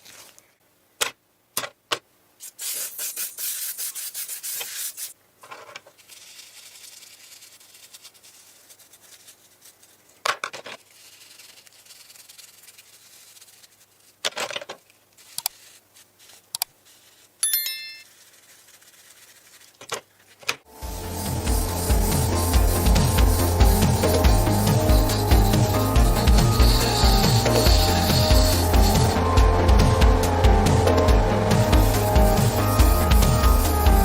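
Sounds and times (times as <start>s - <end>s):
rubbing strokes on a surface: 2.4s - 5.2s, 5.9s - 10.1s, 10.7s - 14.2s, 15.2s - 17.4s, 18.0s - 29.4s, 30.2s - 34.0s
metallic clink: 17.4s - 18.2s.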